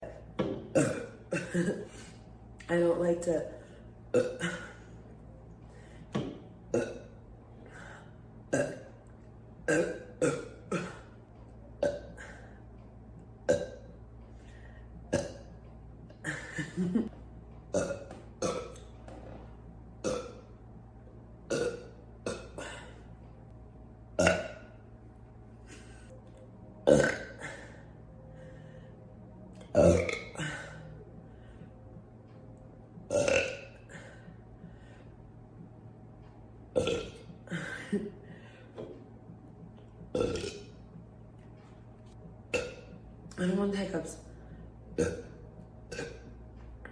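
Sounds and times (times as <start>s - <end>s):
woman burping: 0.0s - 2.1s, 4.1s - 5.0s, 6.7s - 7.2s, 8.5s - 11.2s, 11.8s - 12.5s, 13.5s - 13.9s, 15.1s - 15.5s, 16.1s - 17.1s, 17.7s - 18.8s, 20.0s - 20.5s, 21.5s - 23.0s, 24.2s - 24.8s, 26.8s - 27.9s, 29.6s - 31.0s, 33.1s - 34.2s, 36.8s - 38.2s, 40.1s - 40.7s, 42.5s - 42.9s, 45.0s - 46.3s.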